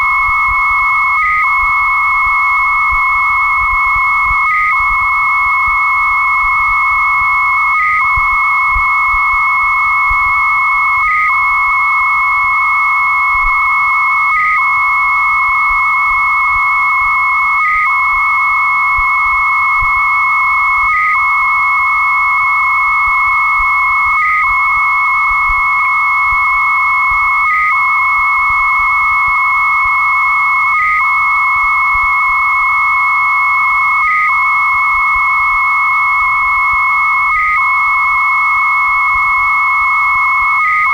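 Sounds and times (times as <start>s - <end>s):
high modem carrier tone: 0.0s - 40.9s
warbling modem data tone: 0.0s - 40.9s.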